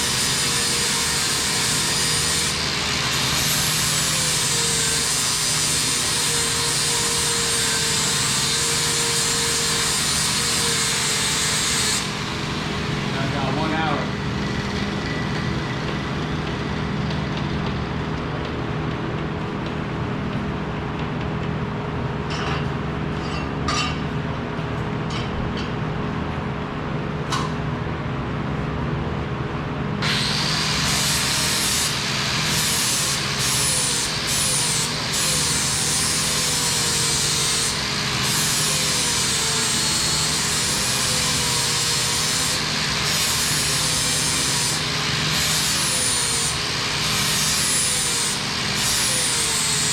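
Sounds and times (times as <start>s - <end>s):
power tool hissing on metal: 0.0s - 14.9s, 30.0s - 49.9s.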